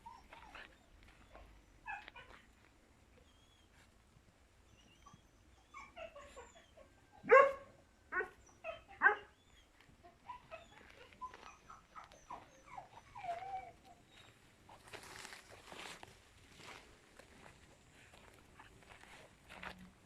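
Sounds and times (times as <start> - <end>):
dog whining and yipping: 0.0 - 2.5, 4.7 - 7.6, 8.2 - 14.4.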